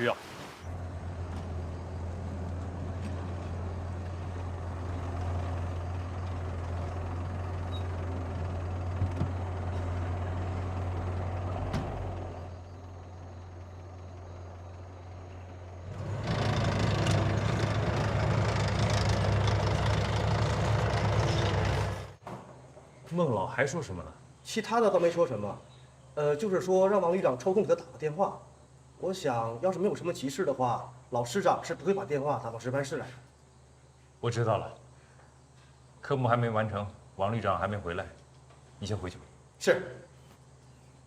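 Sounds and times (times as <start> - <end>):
vehicle engine humming: 0.6 - 22.2.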